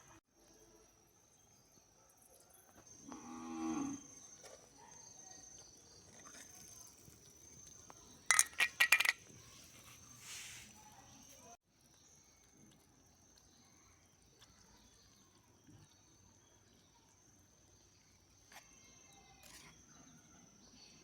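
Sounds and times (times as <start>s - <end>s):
utensils clinking on small pot: 8.3s - 9.4s.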